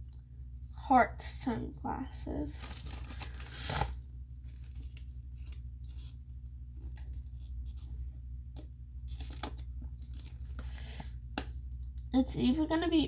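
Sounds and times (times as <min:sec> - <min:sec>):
steady low hum: 0:00.0 - 0:13.0
plastic packaging rustling: 0:02.5 - 0:06.2, 0:09.0 - 0:11.1.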